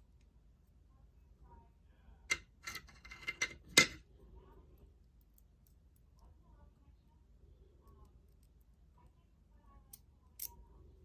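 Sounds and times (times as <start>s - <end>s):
metal padlock parts clicking: 9.9s - 10.6s.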